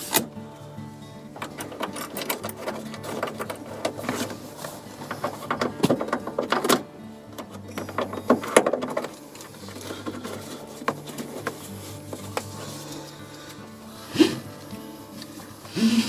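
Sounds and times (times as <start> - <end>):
hand tool clicking and rattling: 1.4 - 13.6.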